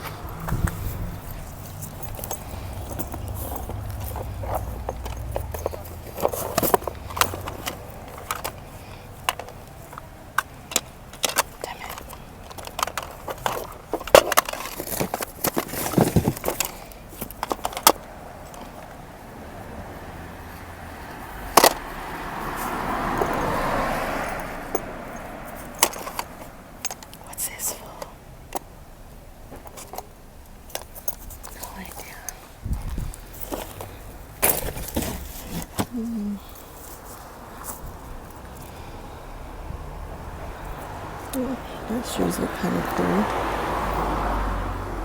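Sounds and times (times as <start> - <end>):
low rumble: 0.0 - 4.0
car passing: 0.0 - 14.7, 15.5 - 29.6, 31.4 - 45.0
objects clicking and knocking: 0.0 - 19.0, 25.5 - 27.6.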